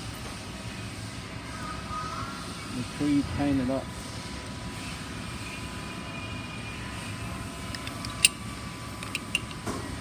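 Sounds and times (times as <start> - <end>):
steady mechanical drone: 0.0 - 10.0
metal clamp clicks: 7.7 - 8.4, 9.0 - 9.7.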